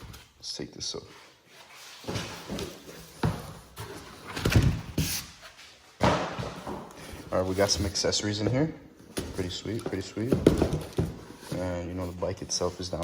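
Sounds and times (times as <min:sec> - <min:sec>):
cardboard scraping and rustling: 0:06.5 - 0:08.2.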